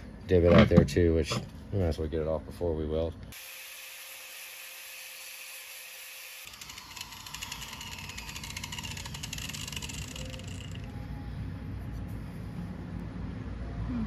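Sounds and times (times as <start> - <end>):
angle grinder grinding metal: 3.4 - 10.9.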